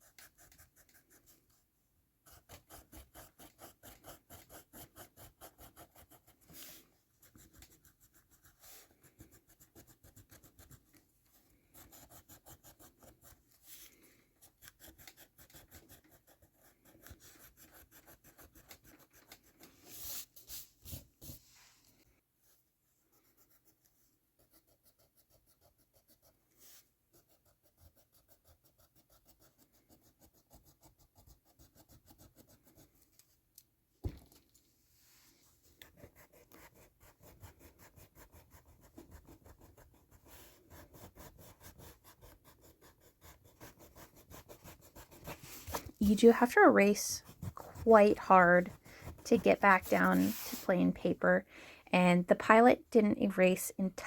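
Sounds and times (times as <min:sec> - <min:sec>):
eraser rubbing on paper: 0:35.9 - 0:51.1.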